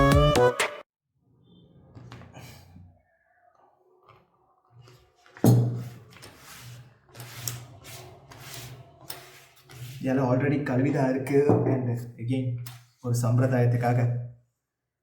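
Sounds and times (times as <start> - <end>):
rubbing and rustling: 4.8 - 10.2.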